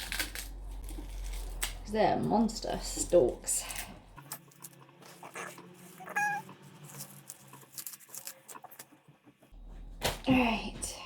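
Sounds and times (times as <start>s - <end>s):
leaves tearing off stalks: 0.0s - 1.9s, 6.8s - 8.8s.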